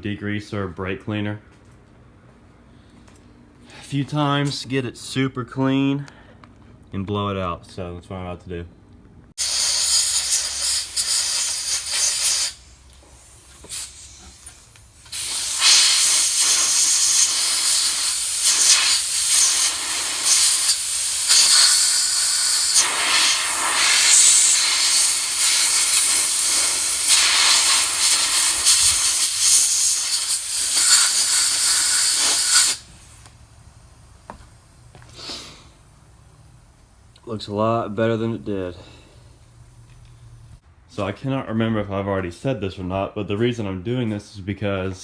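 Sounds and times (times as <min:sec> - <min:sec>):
pressurised spray hissing: 0:09.4 - 0:36.0.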